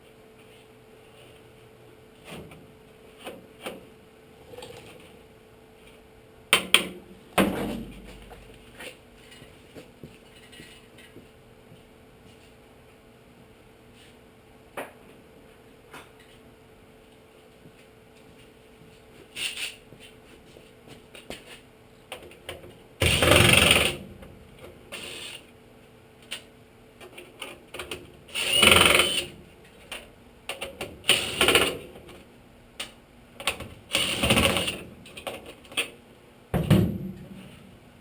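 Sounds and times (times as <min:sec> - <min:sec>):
harsh rasping bursts: 0:28.3 - 0:29.3, 0:33.9 - 0:34.8.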